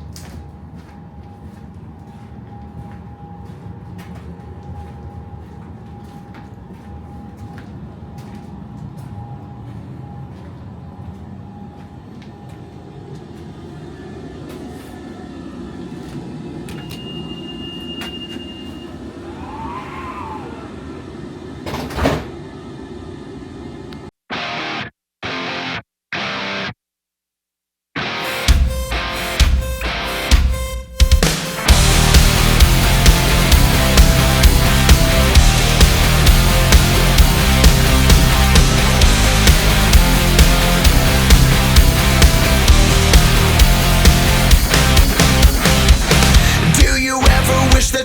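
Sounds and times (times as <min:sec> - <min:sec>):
tram electrical hum: 0:00.0 - 0:24.8, 0:28.1 - 0:48.0
short high beep: 0:16.8 - 0:19.0
rock music: 0:24.3 - 0:26.7, 0:28.0 - 0:48.0.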